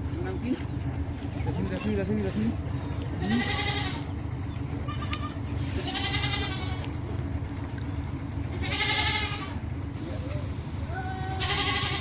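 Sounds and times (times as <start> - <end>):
goats bleating: 1.5 - 7.0, 8.4 - 9.7, 10.9 - 12.0.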